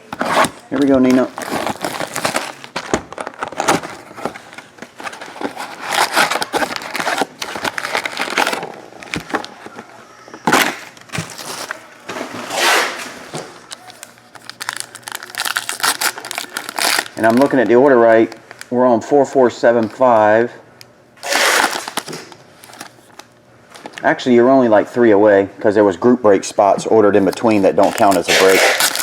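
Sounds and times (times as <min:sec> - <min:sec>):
wrappers torn and crinkled: 0:00.0 - 0:09.7, 0:13.7 - 0:18.7, 0:21.2 - 0:23.9, 0:27.2 - 0:29.0
cards rustling and clicking: 0:00.0 - 0:12.4, 0:27.2 - 0:29.0.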